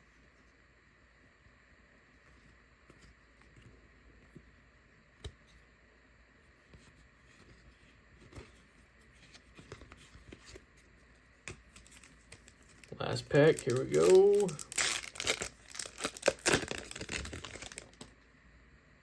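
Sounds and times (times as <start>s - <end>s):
trading cards shuffling: 11.5s - 18.1s.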